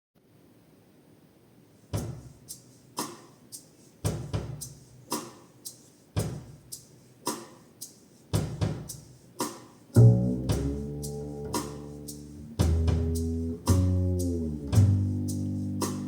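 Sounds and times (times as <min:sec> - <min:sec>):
slow drum groove: 0:01.9 - 0:16.0
bass guitar: 0:10.0 - 0:16.0.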